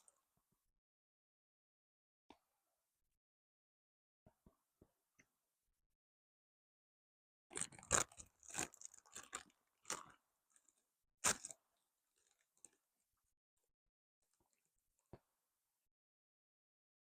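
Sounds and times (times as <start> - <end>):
crisp food being chewed: 7.5 - 11.6, 12.2 - 12.8.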